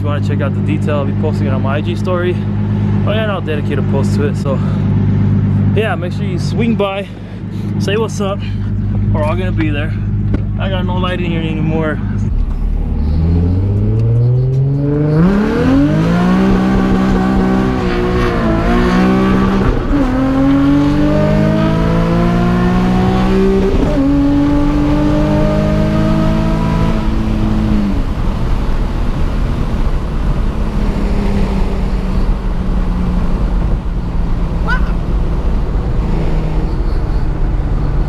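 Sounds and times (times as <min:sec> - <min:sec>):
car engine accelerating: 0:00.0 - 0:38.0.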